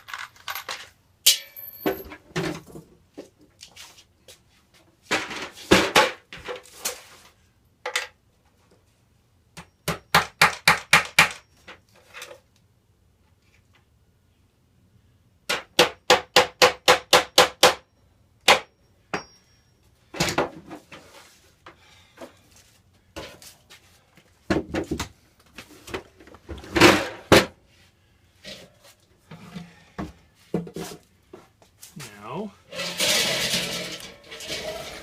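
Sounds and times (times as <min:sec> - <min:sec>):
handling knocks and clatter: 0:00.0 - 0:02.9, 0:32.7 - 0:35.0
hammer driving a nail: 0:15.5 - 0:17.8, 0:18.4 - 0:19.3.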